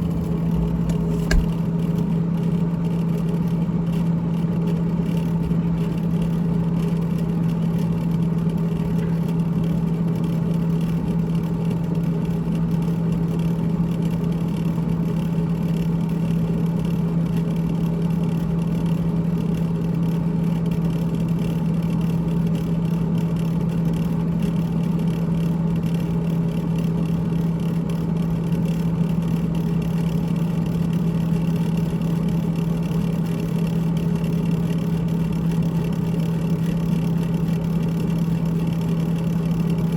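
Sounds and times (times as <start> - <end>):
refrigerator humming: 0.0 - 10.8.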